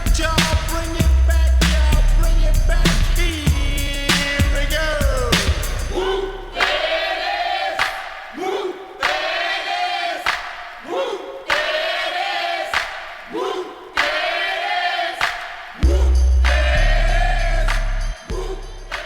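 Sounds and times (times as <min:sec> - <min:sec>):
crowd chanting: 0:04.2 - 0:19.0.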